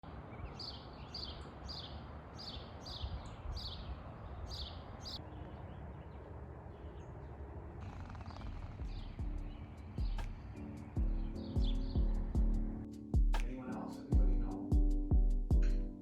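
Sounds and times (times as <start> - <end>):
low outdoor background noise: 0.0 - 11.4
bird chirping falling notes: 0.1 - 12.8.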